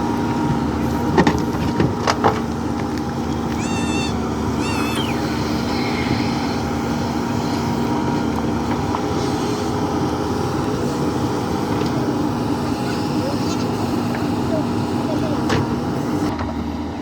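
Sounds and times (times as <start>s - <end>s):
diesel engine running: 0.0s - 17.0s
wavering high-pitched calls: 3.3s - 8.0s.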